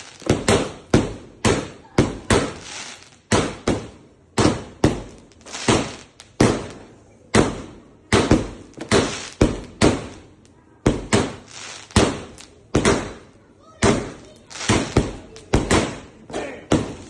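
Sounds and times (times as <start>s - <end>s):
fireworks cake bangs: 0.0s - 17.0s.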